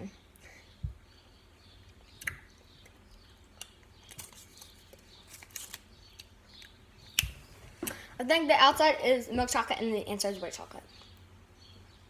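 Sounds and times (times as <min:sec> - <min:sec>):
wrapper clicks and rustles: 0:03.6 - 0:06.7.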